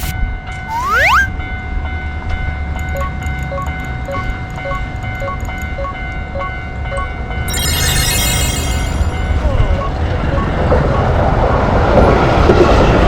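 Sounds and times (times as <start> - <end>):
railroad crossing bell dinging: 0.1 - 12.4
bright loud sound: 7.5 - 9.4
train rumble: 9.3 - 13.0.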